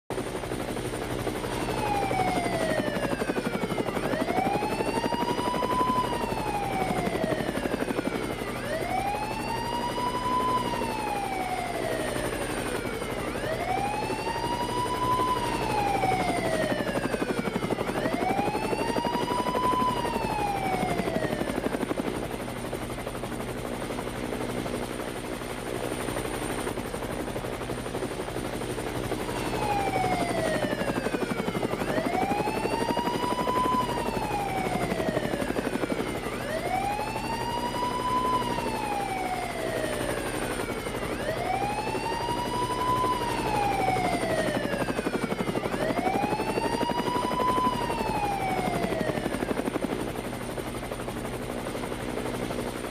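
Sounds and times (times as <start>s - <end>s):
helicopter rotor chopping: 0.1s - 52.9s
police siren wailing: 1.2s - 21.9s, 28.7s - 50.3s.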